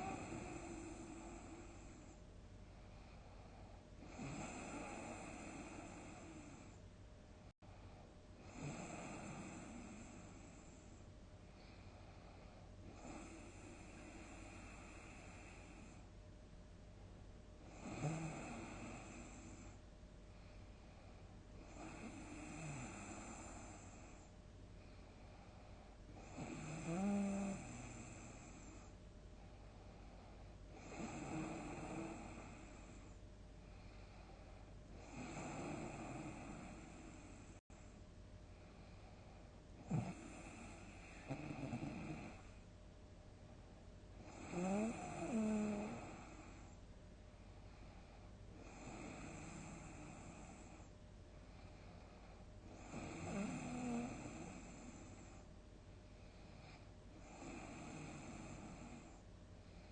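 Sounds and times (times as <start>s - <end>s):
person snoring loudly: 0.0s - 1.9s, 4.0s - 6.6s, 17.7s - 19.4s, 26.2s - 28.5s, 44.3s - 46.4s, 52.7s - 55.0s
person snoring: 0.0s - 2.1s, 4.0s - 6.8s, 8.4s - 10.7s, 17.6s - 19.8s, 21.6s - 24.2s, 26.2s - 28.8s, 30.8s - 33.1s, 35.0s - 37.6s, 39.8s - 42.5s, 44.2s - 46.7s, 48.6s - 50.9s, 52.7s - 55.4s, 56.7s - 59.2s.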